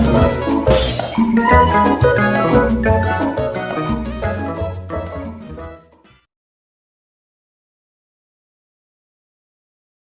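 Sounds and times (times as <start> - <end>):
music with bass line: 0.0 - 6.0.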